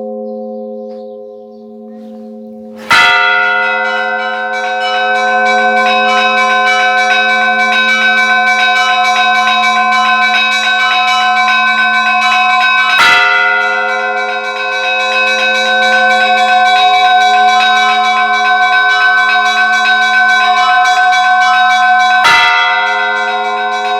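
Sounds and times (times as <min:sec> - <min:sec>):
large bells ringing: 0:00.0 - 0:23.9
heavy big bell stroke: 0:01.8 - 0:04.3
small bells struck rapidly: 0:02.9 - 0:23.9.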